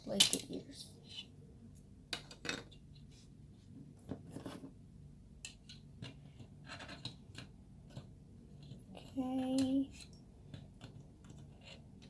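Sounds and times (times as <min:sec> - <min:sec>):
plastic parts clicking and scraping: 0:05.4 - 0:12.0.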